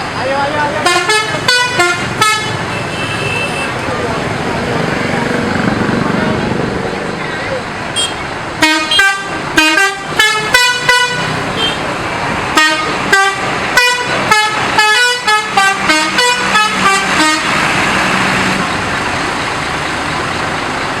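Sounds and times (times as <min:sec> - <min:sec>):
steady vehicle noise: 0:00.0 - 0:21.0
musical air horn tune: 0:08.0 - 0:11.8, 0:12.6 - 0:17.6.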